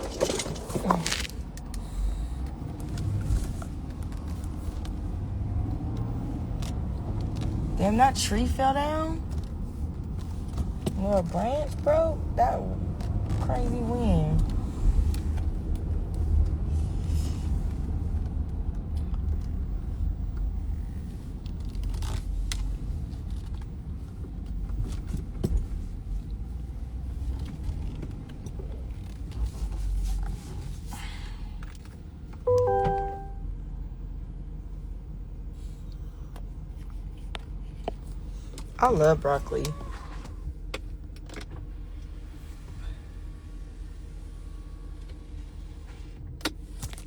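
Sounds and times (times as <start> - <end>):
road and engine rumble: 0.0 - 47.0
two-tone beep: 32.5 - 33.4.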